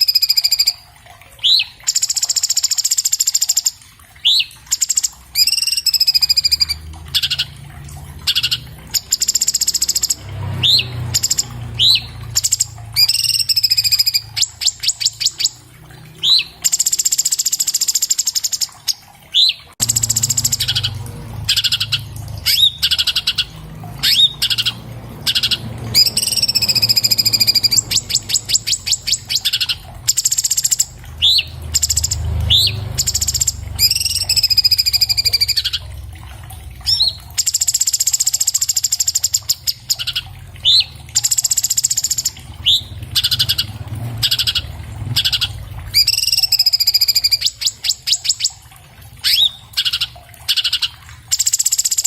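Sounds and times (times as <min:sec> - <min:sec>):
bird singing whistled trills: 0:00.0 - 0:00.8, 0:01.4 - 0:07.5, 0:08.3 - 0:15.6, 0:16.2 - 0:35.8, 0:36.9 - 0:48.6, 0:49.2 - 0:52.0.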